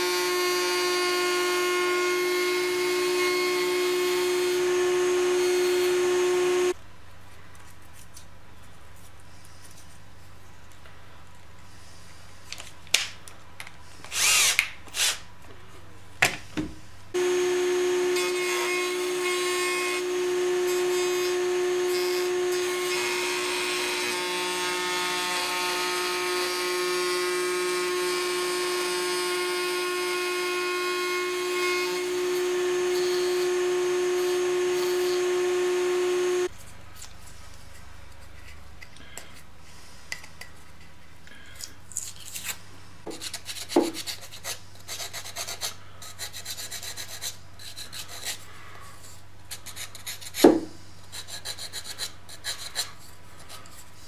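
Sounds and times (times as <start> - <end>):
power tool motor running: 0.0 - 6.8, 17.2 - 36.5.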